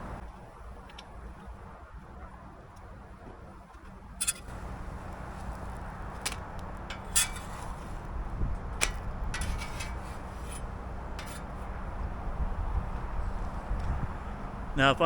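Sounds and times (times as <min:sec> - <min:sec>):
metal spatula scraping griddle: 0:04.2 - 0:05.7, 0:06.9 - 0:08.1, 0:08.8 - 0:11.8.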